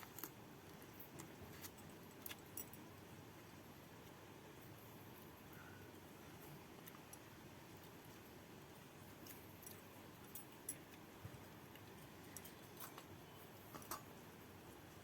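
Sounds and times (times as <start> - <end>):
low room noise: 0.0 - 15.0.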